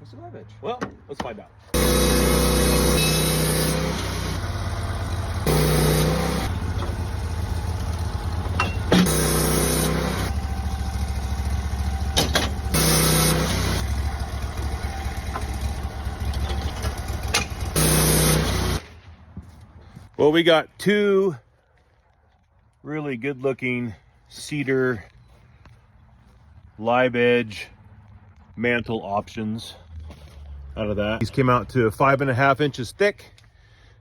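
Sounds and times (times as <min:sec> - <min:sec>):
sawmill engine milling log: 0:01.8 - 0:19.0.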